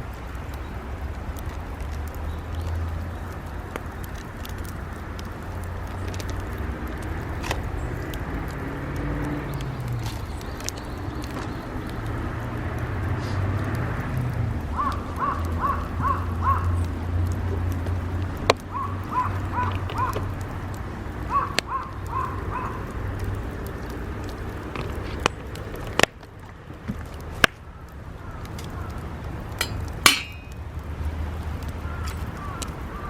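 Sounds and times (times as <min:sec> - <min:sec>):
firewood cracking and knocking: 0:00.0 - 0:33.0
birds calling: 0:09.3 - 0:12.5, 0:14.7 - 0:17.6, 0:18.4 - 0:23.6, 0:26.9 - 0:30.8, 0:31.4 - 0:33.0.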